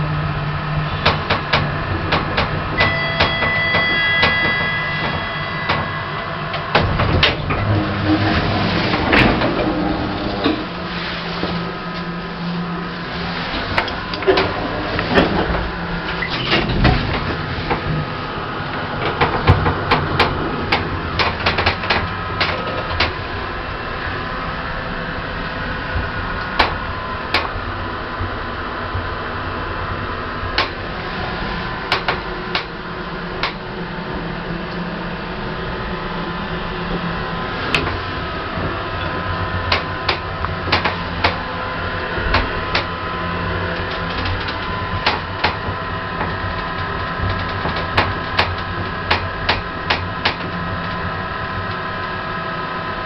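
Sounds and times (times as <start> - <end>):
hydraulic lift humming: 0.0 - 53.0
sharp clicks and knocks: 1.0 - 7.7, 19.0 - 23.2, 26.5 - 27.6, 30.6 - 30.8, 31.9 - 32.8, 33.4 - 33.6, 39.7 - 41.4, 42.2 - 43.0, 43.8 - 51.0.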